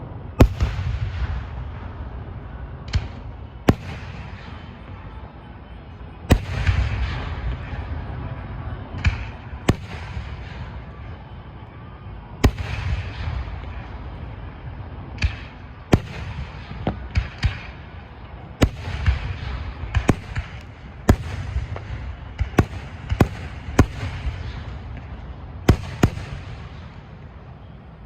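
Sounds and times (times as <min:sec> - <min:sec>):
fireworks booming: 0:00.4 - 0:05.1, 0:06.3 - 0:11.2, 0:12.4 - 0:14.4, 0:15.0 - 0:27.7
fireworks crackling: 0:12.3 - 0:28.0.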